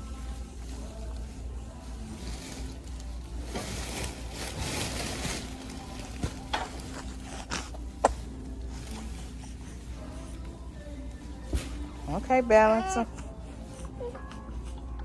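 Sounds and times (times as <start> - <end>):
plastic wrapping ripping: 2.0 - 7.2.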